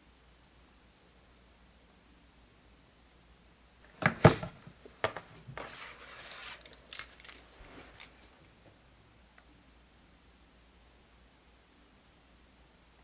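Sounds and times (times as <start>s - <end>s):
desk objects clattering: 3.9s - 6.0s.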